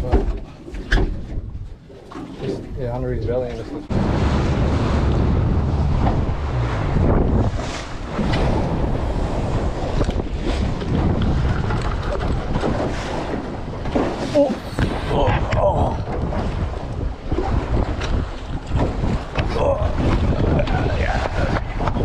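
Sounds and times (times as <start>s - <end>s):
wind buffeting microphone: 0.0s - 1.9s, 2.5s - 22.0s
boat engine: 0.0s - 22.0s
water: 0.0s - 22.0s.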